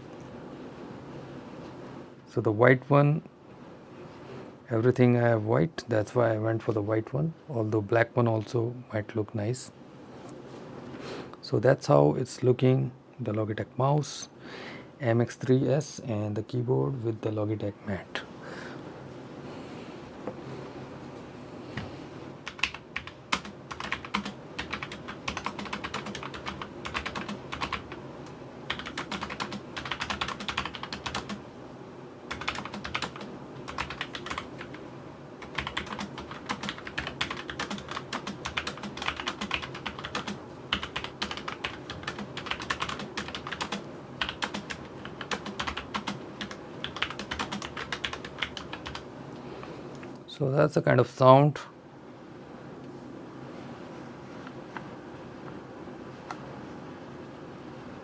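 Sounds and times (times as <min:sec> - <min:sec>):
mechanical keyboard typing: 0:22.4 - 0:28.0, 0:28.7 - 0:31.4, 0:32.3 - 0:34.8, 0:35.4 - 0:49.0.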